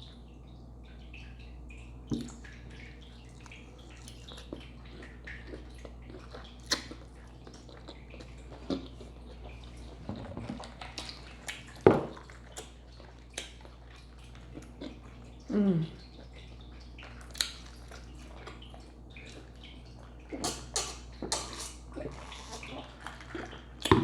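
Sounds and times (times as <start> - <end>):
crunchy chewing of salad: 3.2 - 15.3, 16.0 - 24.0.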